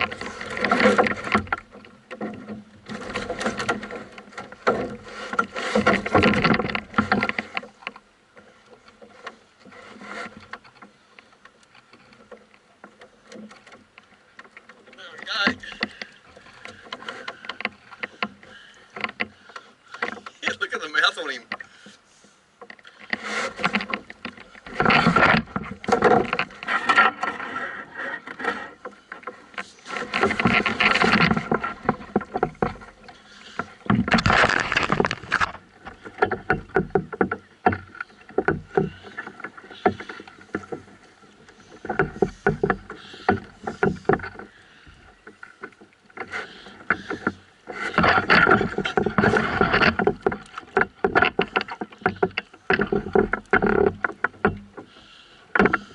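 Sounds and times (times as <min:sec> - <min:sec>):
fish knocking against canoe hull: 0:30.0 - 0:55.9.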